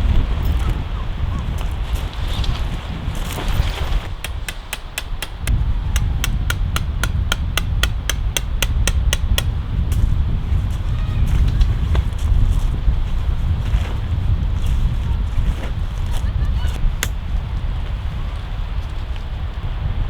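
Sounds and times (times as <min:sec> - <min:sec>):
wind buffeting microphone: 0:00.0 - 0:20.0
hammer blows: 0:04.0 - 0:10.1.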